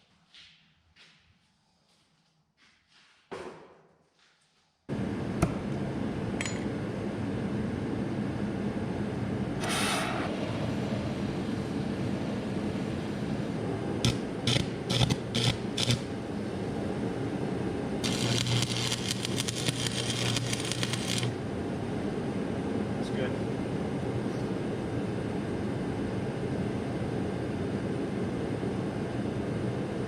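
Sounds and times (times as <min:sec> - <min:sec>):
welder hum: 0:09.5 - 0:21.4
welding arc crackling: 0:14.0 - 0:16.1, 0:18.0 - 0:21.4.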